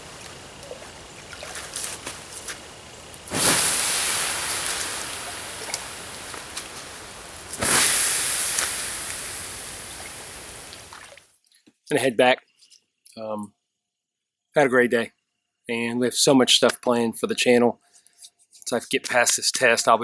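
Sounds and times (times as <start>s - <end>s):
hot coals hissing: 0.0s - 11.2s
water pouring on campfire: 0.0s - 11.2s.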